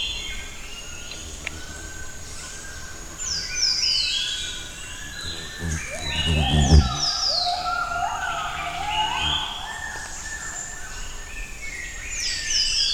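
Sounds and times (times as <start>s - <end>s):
gibbons whooping: 5.2s - 10.0s
high falling whistles: 5.3s - 10.7s.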